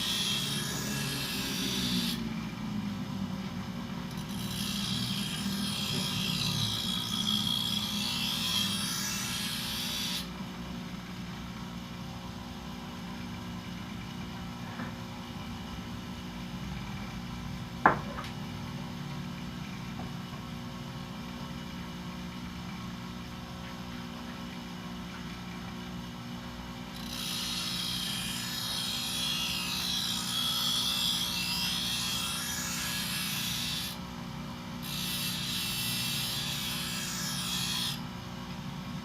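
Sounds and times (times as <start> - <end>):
bench grinder motor humming: 0.0 - 2.3, 4.0 - 10.3
blade grinding on wheel: 4.1 - 10.3, 27.0 - 34.0.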